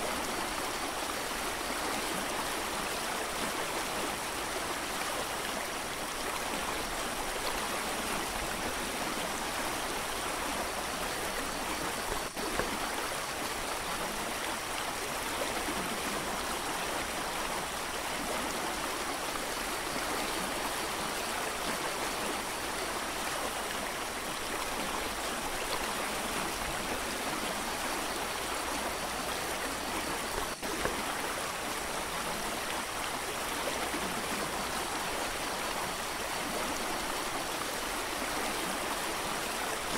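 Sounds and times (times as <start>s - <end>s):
creek rushing over rocks: 0.0s - 39.9s.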